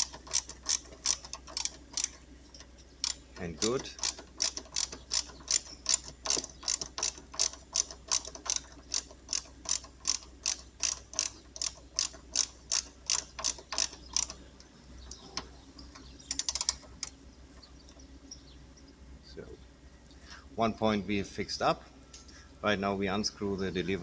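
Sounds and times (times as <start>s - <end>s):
ratchet wrench clicking: 0.0s - 14.4s, 16.3s - 17.1s.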